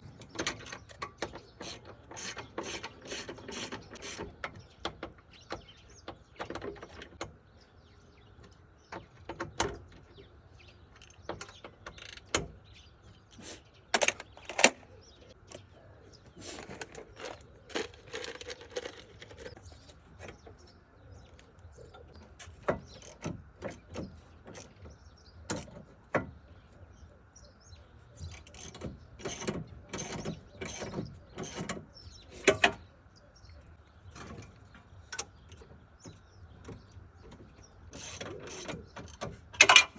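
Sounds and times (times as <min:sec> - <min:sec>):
hand tools clattering on metal: 0:16.4 - 0:20.5, 0:36.6 - 0:39.9.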